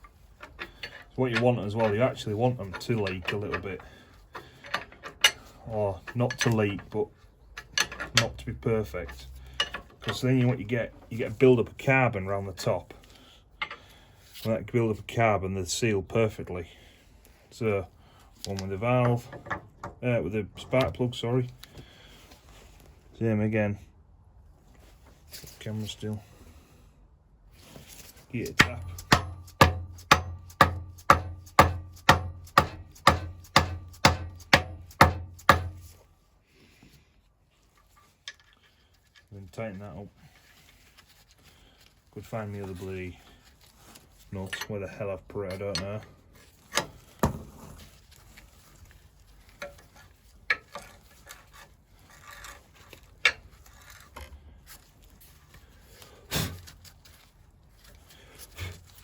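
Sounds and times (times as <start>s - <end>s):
metal tools clinking: 0.0s - 10.7s
hammer tapping metal: 28.5s - 35.8s.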